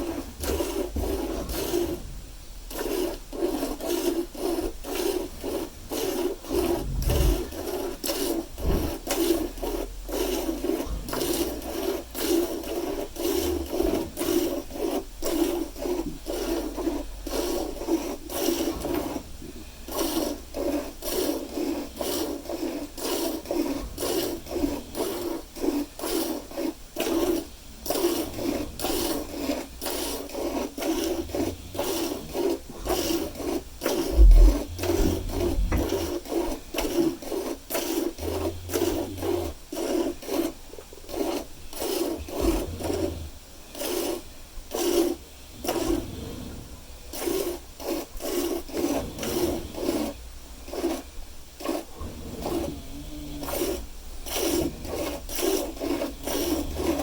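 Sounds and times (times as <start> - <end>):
milk squirting into a pail: 0.0 - 51.0, 51.6 - 57.0
low rumbles: 6.7 - 7.6, 34.1 - 36.0
low thump: 34.1 - 35.9.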